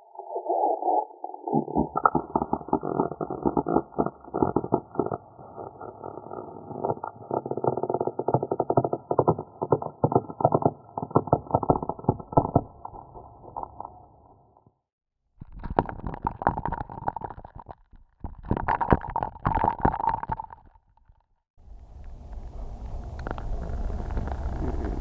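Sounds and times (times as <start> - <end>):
ice cracking underwater: 1.5 - 14.3, 15.4 - 21.2, 22.3 - 25.0
steady low rumble: 21.6 - 25.0.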